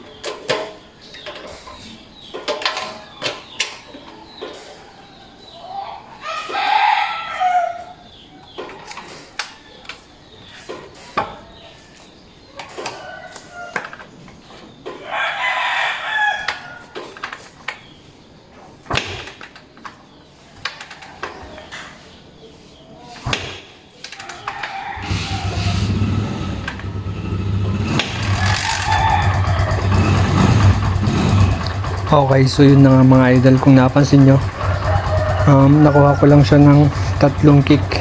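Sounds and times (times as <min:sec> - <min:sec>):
rooster crowing: 0:05.0 - 0:08.0, 0:15.0 - 0:16.9, 0:24.3 - 0:27.0, 0:28.2 - 0:30.2, 0:34.4 - 0:37.0.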